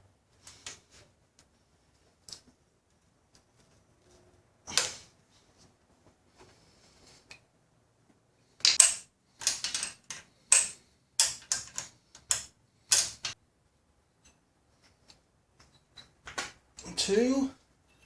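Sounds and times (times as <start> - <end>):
hand tool clicks and rasps: 8.6 - 13.4.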